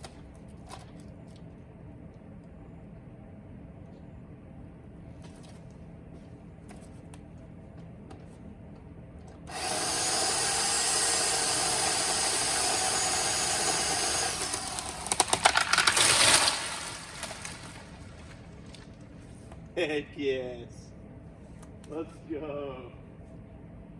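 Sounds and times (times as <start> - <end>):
electric chainsaw cutting wood: 9.5 - 18.1
branch cracking and falling: 14.7 - 19.0.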